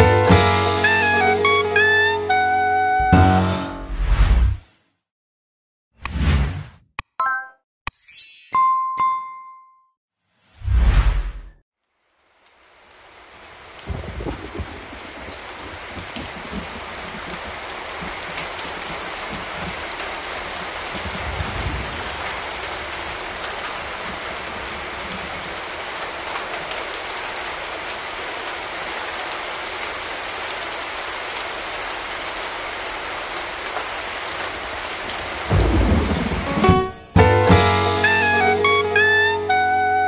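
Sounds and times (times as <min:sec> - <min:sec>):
heavy rain hissing: 0:12.1 - 0:39.9
thunder rumbling: 0:13.7 - 0:25.6, 0:34.6 - 0:37.0.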